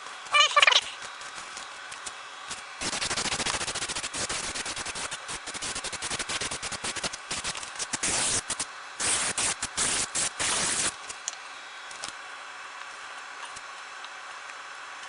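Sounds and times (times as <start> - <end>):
aerosol spray can spraying: 2.5 - 11.2.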